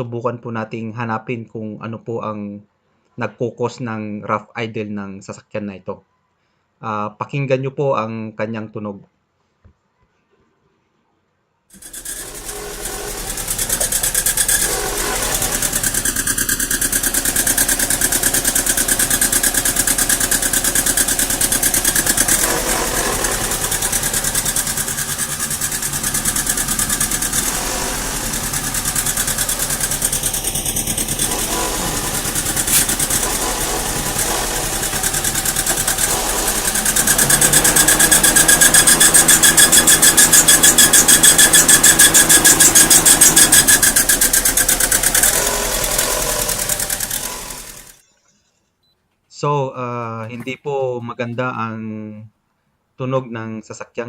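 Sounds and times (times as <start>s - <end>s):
car engine idling roughly: 11.8s - 48.0s.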